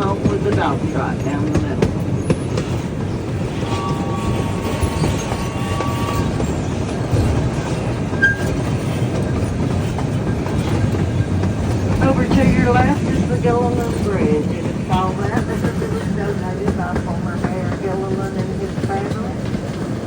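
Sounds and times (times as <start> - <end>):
train wheels clattering on rails: 0.0 - 20.0
faint thin wheel squeal: 3.6 - 6.7, 8.2 - 8.5.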